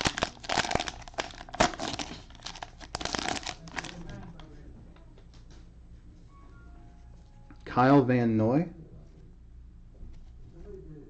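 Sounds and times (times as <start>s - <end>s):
cards rustling: 0.0s - 4.4s
cellophane wrapper tearing and crinkling: 0.0s - 4.4s.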